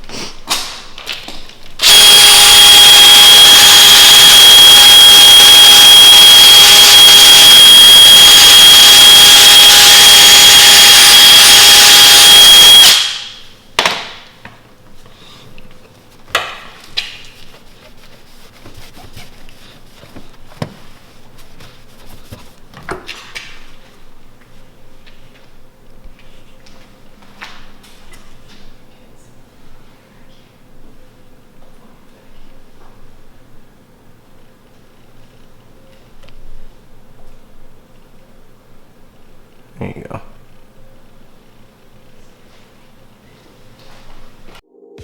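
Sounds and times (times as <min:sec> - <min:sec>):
electric polisher whining: 0:01.8 - 0:13.2.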